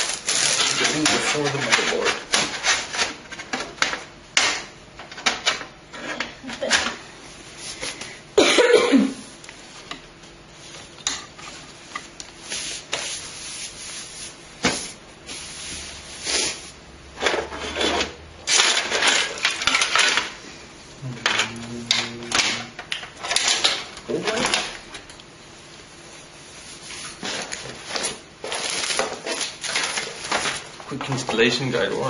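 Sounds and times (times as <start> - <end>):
packaging rustling: 0.0 - 3.0, 26.8 - 31.3
computer parts clicking and clattering: 0.3 - 7.0, 17.2 - 20.4, 21.2 - 24.8.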